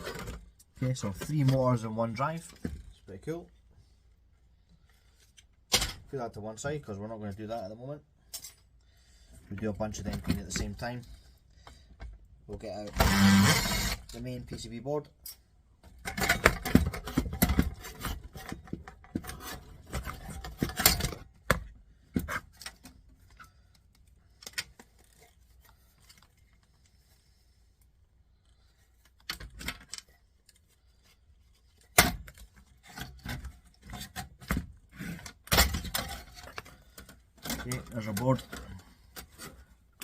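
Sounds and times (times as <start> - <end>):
plastic and metal parts clattering: 0.0 - 3.1, 15.2 - 27.2, 28.5 - 40.0.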